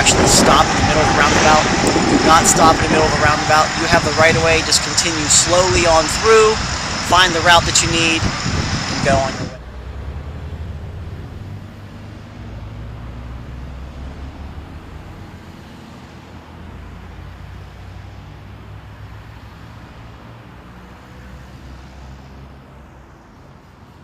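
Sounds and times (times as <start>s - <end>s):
motor vehicles driving past: 9.5s - 24.0s.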